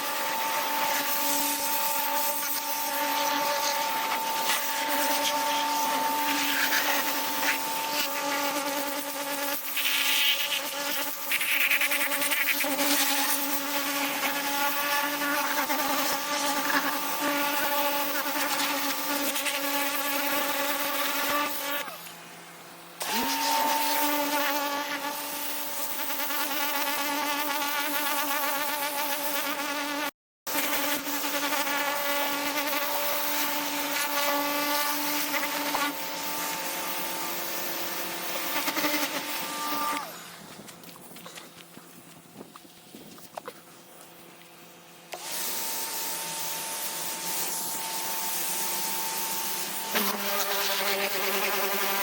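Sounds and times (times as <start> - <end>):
pressure washer motor whine: 0.0 - 8.1, 22.0 - 24.3, 45.1 - 49.9
water spray hissing: 9.6 - 13.6.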